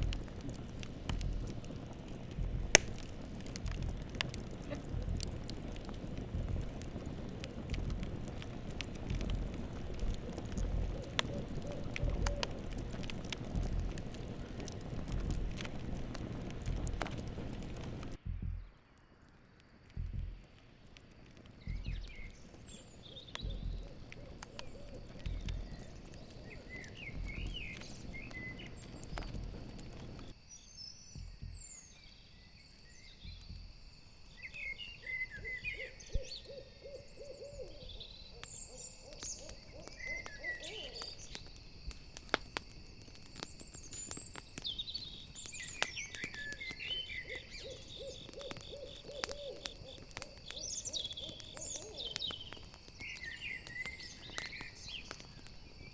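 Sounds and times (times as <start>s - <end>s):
low rumble: 0.0s - 18.8s
campfire crackling: 0.0s - 55.9s
crickets chirping: 0.0s - 55.9s
owl hooting: 10.1s - 12.9s, 23.1s - 25.8s, 35.0s - 41.4s, 46.0s - 52.6s
bird chirps: 21.6s - 29.6s, 34.3s - 41.6s, 43.2s - 55.9s.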